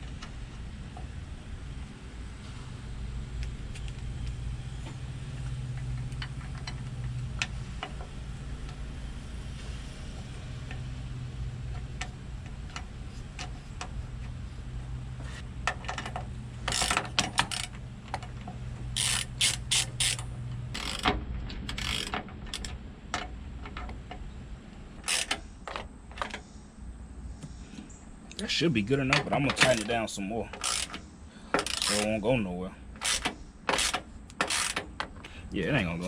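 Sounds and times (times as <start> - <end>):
ratchet wrench clicking: 15.9 - 17.8, 19.0 - 21.1, 21.7 - 22.7, 25.0 - 25.4, 29.5 - 30.0, 30.6 - 32.1, 33.0 - 35.0.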